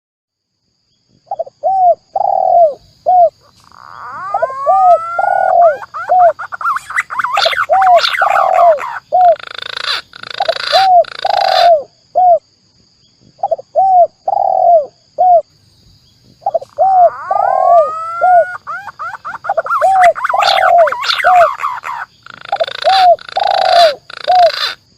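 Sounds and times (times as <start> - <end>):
dove cooing: 1.3 - 12.4, 13.3 - 15.4, 16.4 - 24.8
falling whistles: 16.8 - 21.4.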